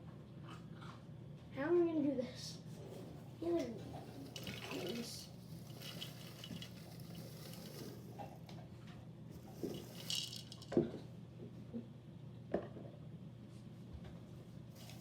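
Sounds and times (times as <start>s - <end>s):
popcorn rustling into bowl: 3.8s - 8.4s, 9.4s - 10.9s, 14.7s - 15.0s.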